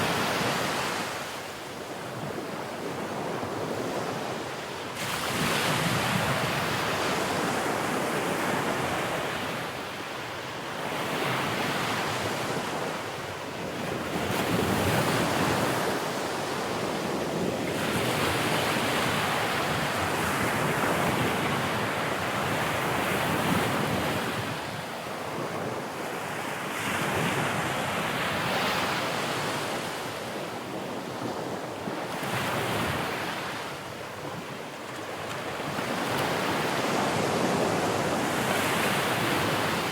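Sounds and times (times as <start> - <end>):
wind noise on microphone: 5.0 - 9.6.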